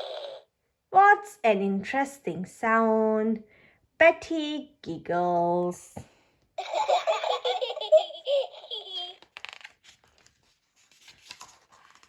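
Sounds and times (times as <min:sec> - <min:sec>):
cartoon child giggling: 0:00.0 - 0:00.4, 0:06.6 - 0:09.2.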